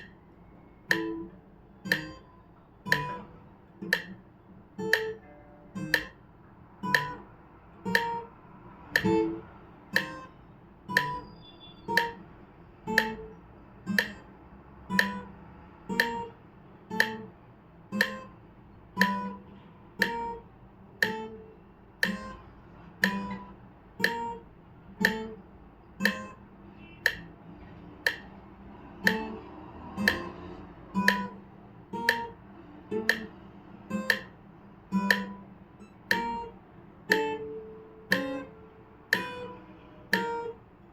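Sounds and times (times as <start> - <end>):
metronome clicking: 0.0 - 6.2, 6.8 - 27.4, 28.0 - 28.4, 29.0 - 40.8
guitar finger exercise: 0.0 - 40.9.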